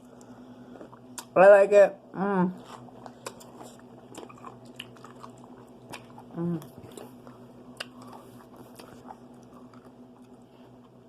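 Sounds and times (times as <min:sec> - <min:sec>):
crunchy chewing: 0:02.6 - 0:11.0
person humming: 0:06.3 - 0:06.8.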